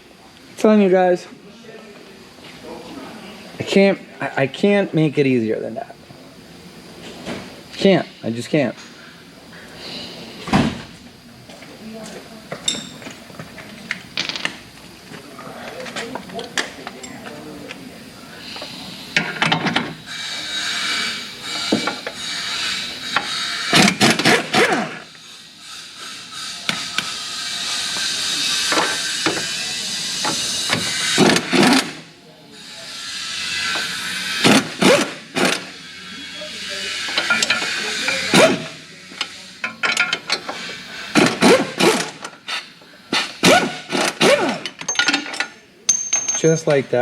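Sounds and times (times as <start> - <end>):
metal clanks and knocks: 44.0 - 46.7.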